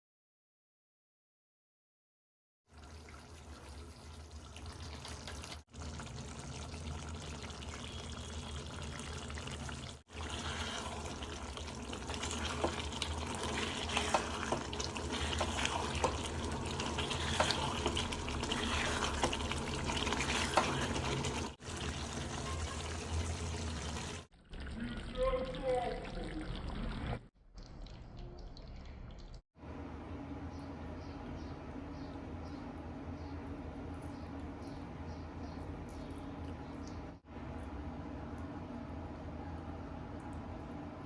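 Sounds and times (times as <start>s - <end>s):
food sizzling in a pan: 5.8s - 24.3s
sharp crackles and spatters: 9.2s - 24.3s.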